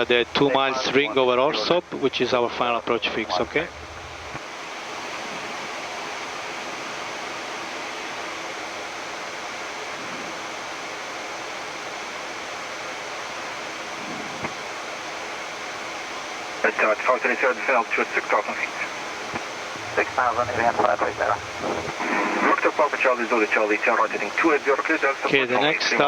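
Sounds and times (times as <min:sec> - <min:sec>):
aircraft cockpit rushing hiss: 0:16.4 - 0:25.3.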